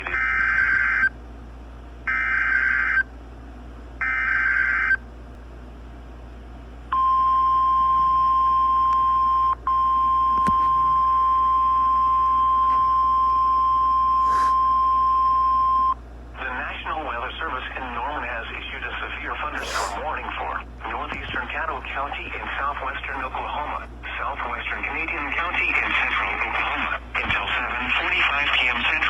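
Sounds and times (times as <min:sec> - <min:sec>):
steady warning alarm tone: 0:06.9 - 0:16.0.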